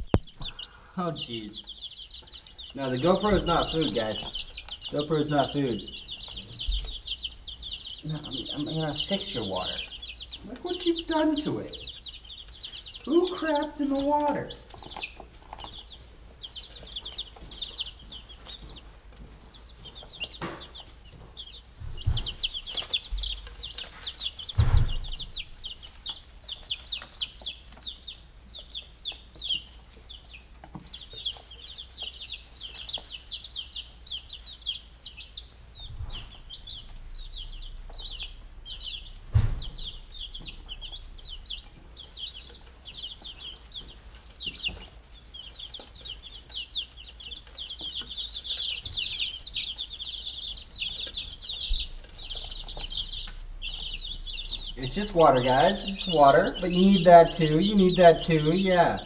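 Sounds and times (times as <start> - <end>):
baby chicks peeping: 0.0 - 59.0
dull knocks: 24.4 - 25.4, 39.3 - 40.7.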